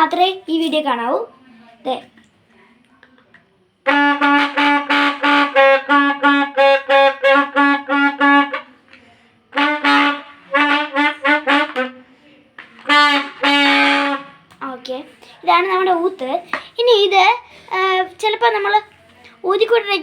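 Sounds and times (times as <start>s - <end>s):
toy trumpet tooting: 3.8s - 8.7s, 9.5s - 12.0s, 12.8s - 14.4s.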